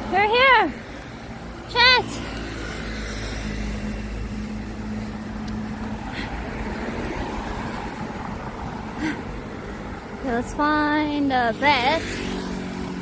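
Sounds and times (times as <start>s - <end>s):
engine hum: 0.0s - 13.0s
low rumble of traffic: 0.0s - 13.0s.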